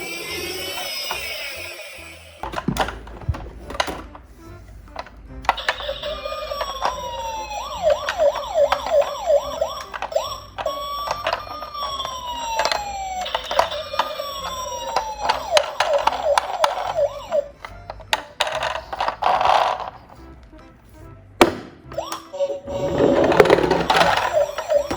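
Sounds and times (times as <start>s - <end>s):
electronic toy siren: 0.0s - 2.4s, 5.5s - 19.9s, 21.9s - 24.9s.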